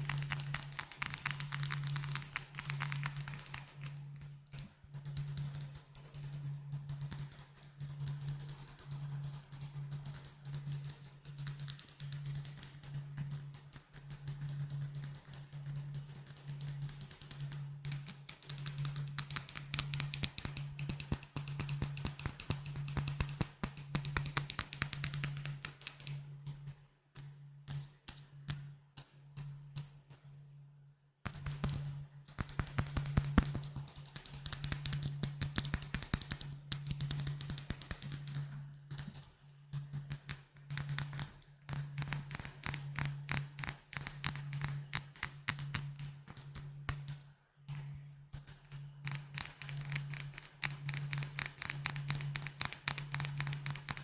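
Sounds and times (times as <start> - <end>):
tapping on glass bottles: 0.0 - 4.2, 10.0 - 11.5.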